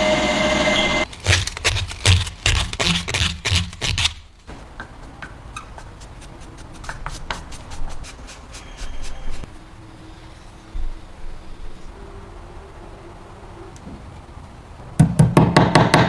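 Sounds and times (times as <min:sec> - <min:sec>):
hand scraping a workpiece: 0:00.8 - 0:09.5.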